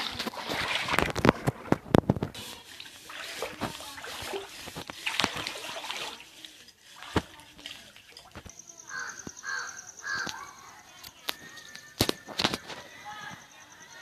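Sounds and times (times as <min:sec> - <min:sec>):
floodwater splashing and sloshing: 0:00.0 - 0:08.5
water trickling: 0:00.0 - 0:09.2
crow calling: 0:08.9 - 0:10.6.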